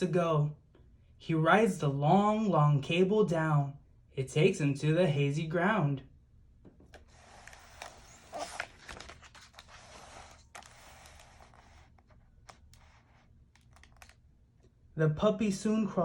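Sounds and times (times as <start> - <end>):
faint paper rustling: 6.8 - 14.2
paper crackle: 6.9 - 14.2.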